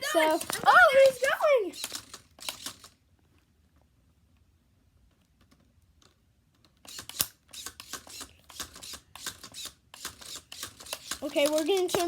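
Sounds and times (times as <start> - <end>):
sharp clicks and rattles: 0.1 - 3.0, 5.1 - 12.0.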